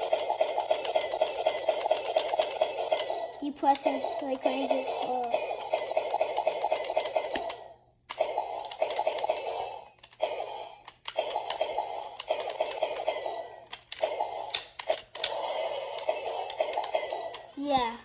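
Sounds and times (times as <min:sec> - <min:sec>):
fast crackling toy sound effect: 0:00.0 - 0:17.8.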